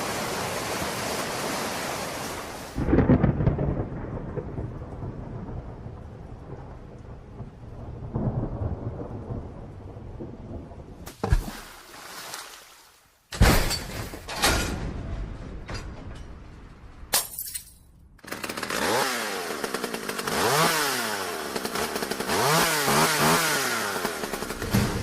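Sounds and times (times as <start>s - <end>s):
small engine revving: 18.3s - 25.0s
loud crashes: 24.5s - 25.0s.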